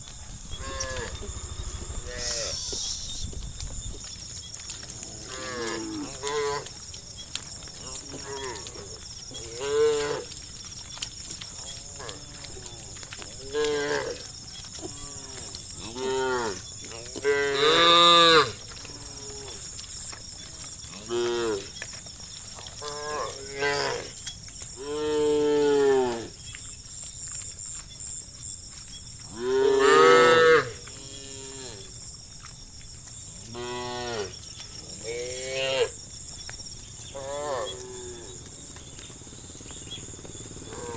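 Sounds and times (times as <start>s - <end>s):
cows mooing: 0.5s - 3.0s, 4.9s - 6.8s, 7.8s - 10.5s, 11.4s - 19.7s, 29.3s - 31.9s, 33.5s - 36.0s, 37.1s - 40.9s.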